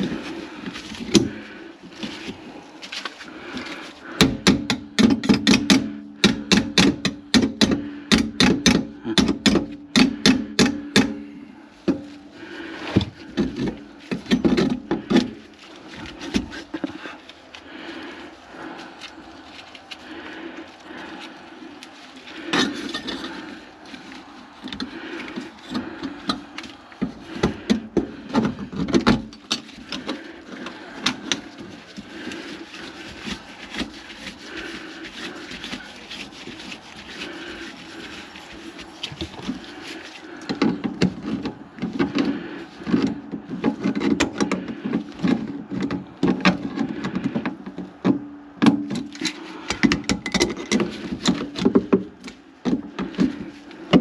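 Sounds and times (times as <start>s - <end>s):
drain snake cable rattling in pipe: 17.8s - 48.0s.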